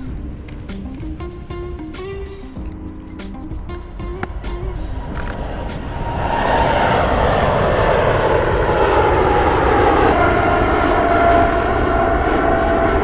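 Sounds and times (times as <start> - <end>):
jet engines whining: 4.1 - 13.0.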